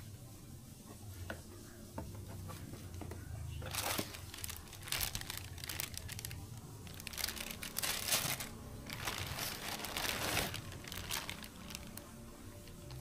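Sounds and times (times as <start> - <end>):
packaging wrap crinkling: 3.6 - 12.2.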